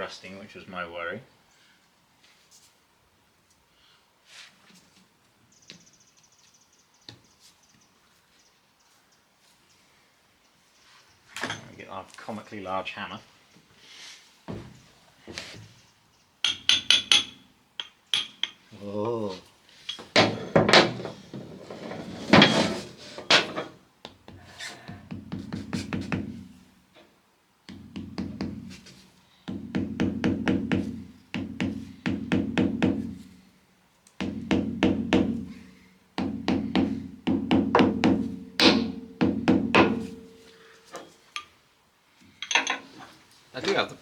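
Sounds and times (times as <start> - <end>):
hammer tapping on metal: 16.4 - 18.6, 27.7 - 28.7, 29.5 - 33.2, 34.2 - 35.6, 36.2 - 40.5
struck metal ringing: 36.2 - 40.6.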